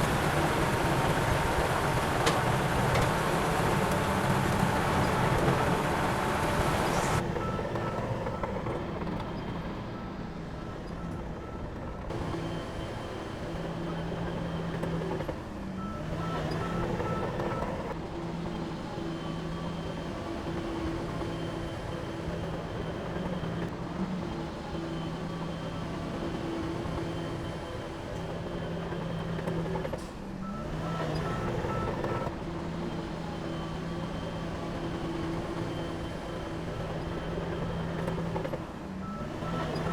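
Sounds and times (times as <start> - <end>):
heavy diesel machinery running: 0.0 - 9.1
reversing alarm beeping: 15.8 - 17.9, 30.4 - 32.3, 33.4 - 39.9.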